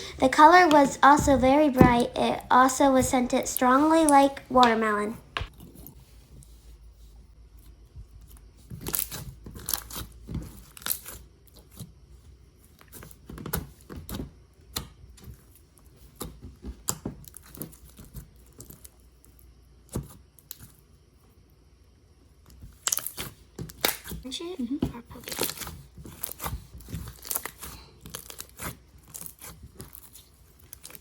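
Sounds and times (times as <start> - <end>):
slime squishing and crackling: 8.5 - 12.0, 22.6 - 31.0.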